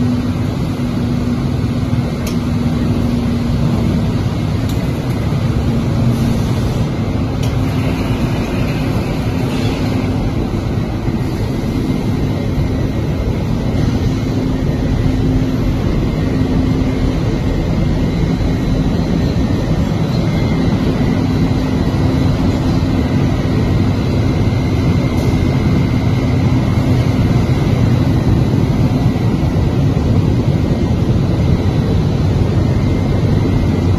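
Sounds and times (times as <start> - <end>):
roar of rushing air and machinery: 0.0 - 33.9.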